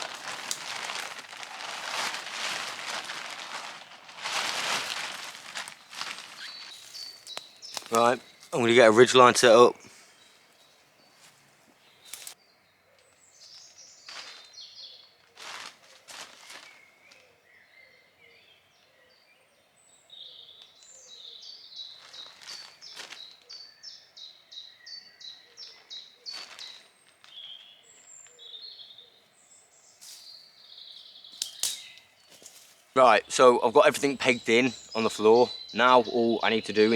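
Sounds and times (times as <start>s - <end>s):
knocks and rustles of camping gear: 0.0s - 8.6s, 31.4s - 32.8s
woodland birds singing: 0.0s - 36.9s.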